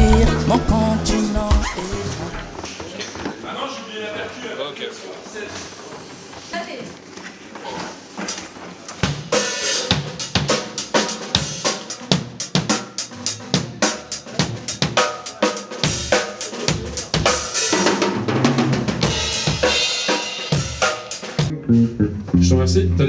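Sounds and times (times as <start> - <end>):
drum kit playing: 0.0 - 2.6, 8.2 - 21.6.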